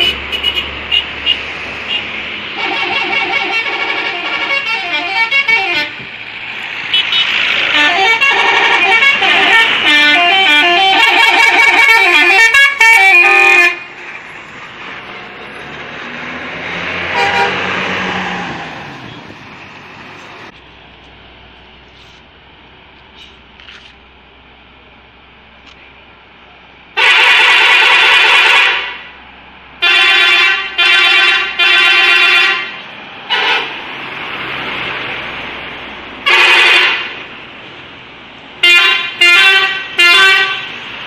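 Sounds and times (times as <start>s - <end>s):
multi-tone bus horn tune: 0.0s - 6.1s, 6.9s - 14.0s, 17.0s - 18.0s, 27.0s - 29.1s, 29.8s - 33.9s, 36.2s - 37.3s, 38.6s - 40.8s
bus engine and road noise: 0.0s - 41.0s.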